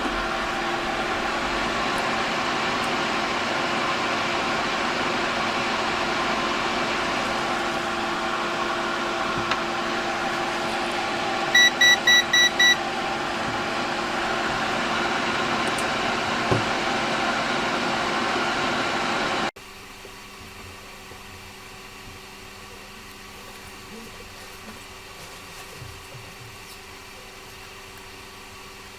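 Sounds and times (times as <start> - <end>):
short electronic beeps: 11.6 - 12.8.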